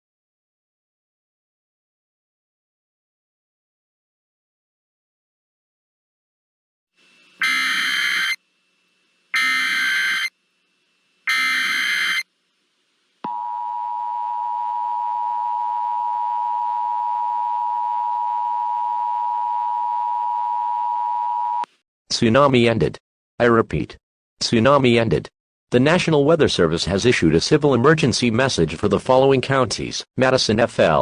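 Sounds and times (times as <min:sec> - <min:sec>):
screechy digital data bursts: 0:07.4 - 0:08.4, 0:09.3 - 0:10.4, 0:11.2 - 0:12.3
two-tone attention signal: 0:07.4 - 0:08.4, 0:09.4 - 0:10.3, 0:11.3 - 0:12.2.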